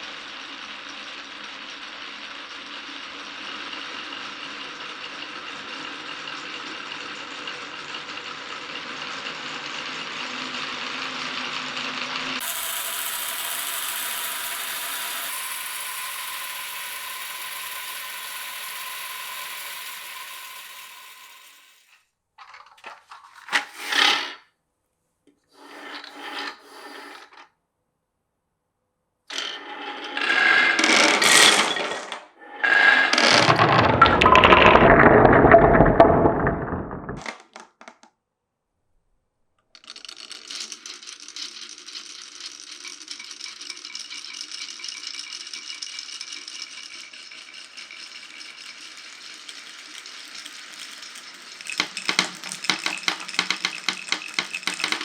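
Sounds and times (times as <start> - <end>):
marbles rolling on wooden track: 0.5 - 24.4, 29.3 - 38.1, 39.7 - 55.0
marbles clattering: 12.4 - 23.1, 30.2 - 38.1, 39.8 - 55.0.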